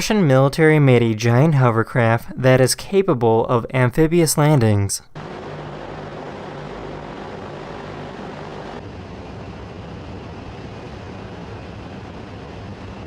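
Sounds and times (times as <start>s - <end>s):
broad rushing noise: 5.2s - 13.0s
hovercraft engine and propeller drone: 5.2s - 13.0s.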